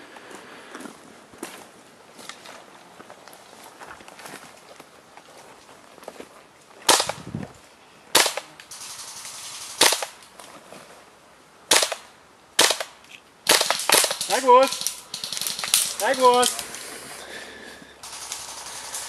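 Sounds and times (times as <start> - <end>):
airsoft gun shots: 6.9 - 7.2, 8.1 - 10.2, 11.7 - 12.9, 13.5 - 16.6.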